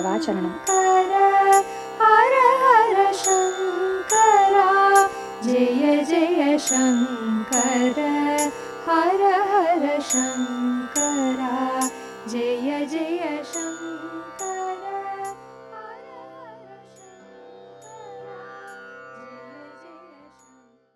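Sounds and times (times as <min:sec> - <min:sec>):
steady drone: 0:00.0 - 0:15.4
ornamented sliding melody: 0:00.0 - 0:15.9.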